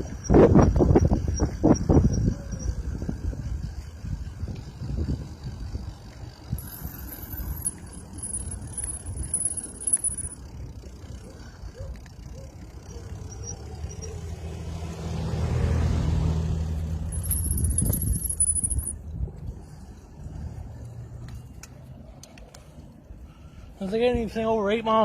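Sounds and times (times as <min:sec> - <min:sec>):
wind on microphone: 0:00.0 - 0:07.0
bicycle road rumble: 0:00.0 - 0:25.0
motor vehicle engine passing: 0:04.7 - 0:22.9.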